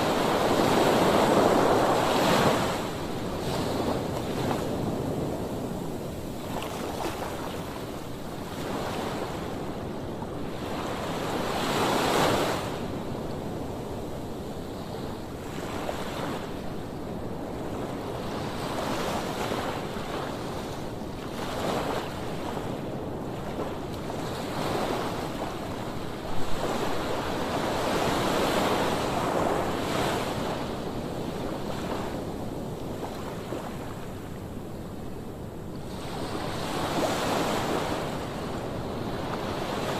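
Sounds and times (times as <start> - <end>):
waves washing onto beach: 0.0 - 39.9
wind on microphone: 0.0 - 39.9.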